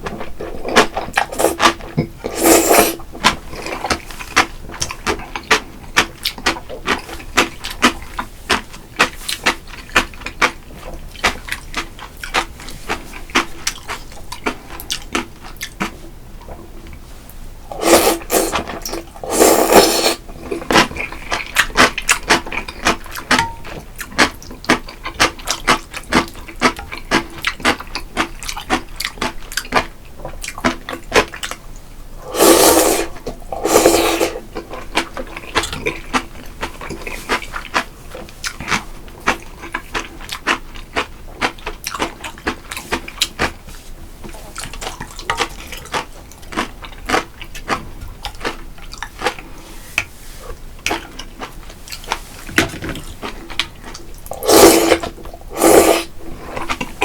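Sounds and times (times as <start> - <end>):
slurping noodles: 0.3 - 4.5, 17.7 - 21.7, 32.2 - 36.0, 53.9 - 57.0.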